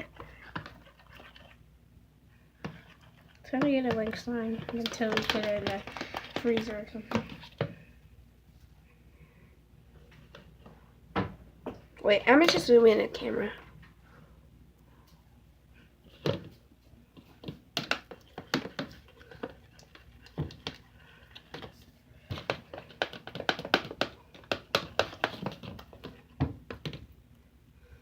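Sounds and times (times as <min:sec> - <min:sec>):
hard objects tapping and clicking: 0:03.6 - 0:07.8, 0:21.4 - 0:27.1.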